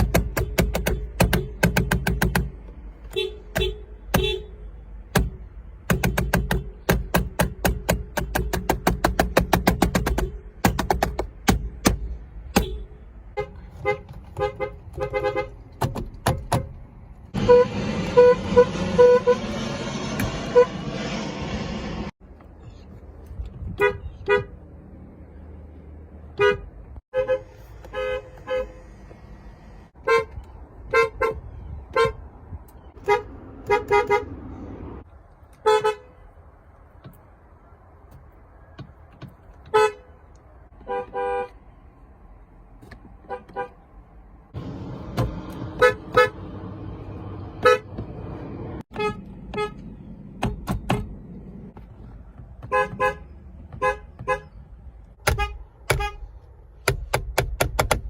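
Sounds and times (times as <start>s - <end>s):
car horns beeping: 0.2s - 8.6s, 11.6s - 19.5s, 23.7s - 24.6s, 26.2s - 29.0s, 29.9s - 34.5s, 35.6s - 36.3s, 38.8s - 41.6s, 43.2s - 43.9s, 45.2s - 46.6s, 47.5s - 48.1s, 48.8s - 51.2s, 52.6s - 56.4s
low rumble: 17.3s - 22.2s.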